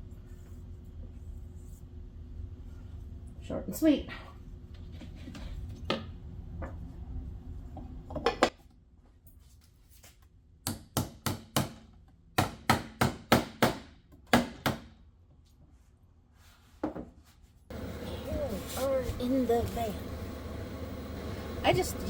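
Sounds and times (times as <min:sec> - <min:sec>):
hammer striking wood: 0:10.7 - 0:11.8, 0:12.4 - 0:14.9
low steady rumble: 0:17.7 - 0:22.0.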